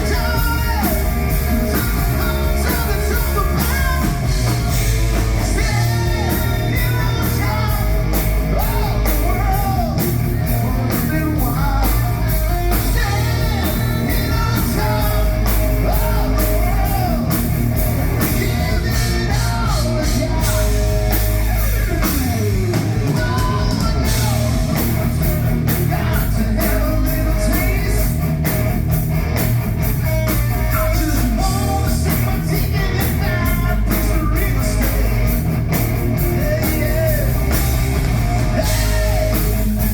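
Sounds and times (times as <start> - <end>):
drum kit: 0.0 - 39.9
electric guitar: 0.0 - 39.9.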